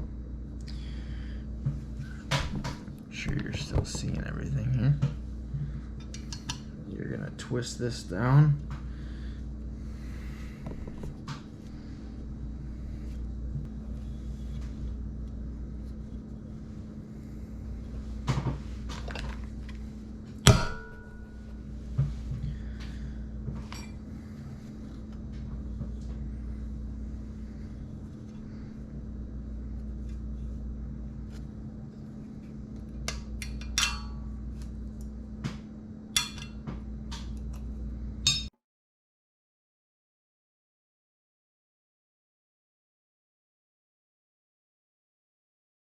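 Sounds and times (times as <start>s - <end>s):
steady low hum: 0.0s - 38.5s
metal tools clinking and knocking: 33.4s - 34.2s.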